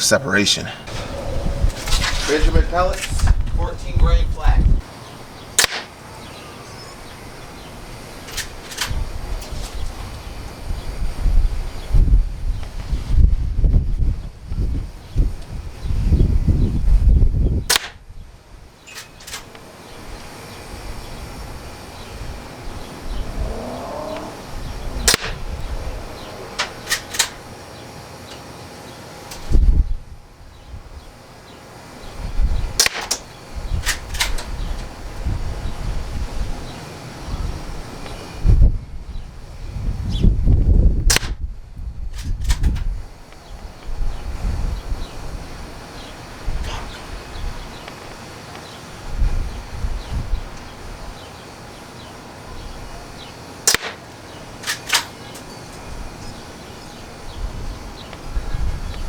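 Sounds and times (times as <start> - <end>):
wind buffeting microphone: 0.7 - 6.0, 6.7 - 28.1, 29.1 - 31.2, 32.0 - 48.3, 48.9 - 51.3, 52.5 - 59.0
rifle action clicks: 5.6 - 5.9, 17.7 - 18.0, 25.1 - 25.4, 32.8 - 34.5, 53.7 - 54.0
air rifle cracks: 5.6 - 6.0, 17.7 - 18.0, 25.0 - 25.4, 26.6 - 27.4, 32.8 - 34.5, 41.1 - 41.4, 53.7 - 55.4.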